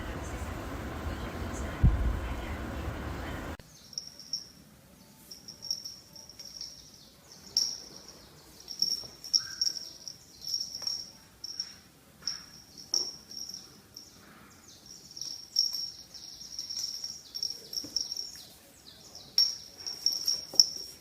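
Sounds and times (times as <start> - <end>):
steady rumbling noise: 0.0 - 3.6
crickets chirping: 0.0 - 21.0.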